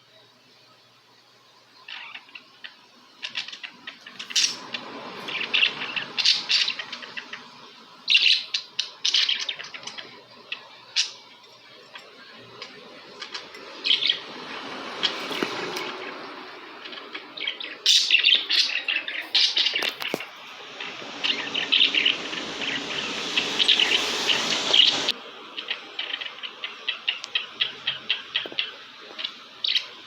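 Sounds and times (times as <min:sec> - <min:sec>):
budgerigars chirping: 0:13.3 - 0:16.1, 0:20.7 - 0:25.1.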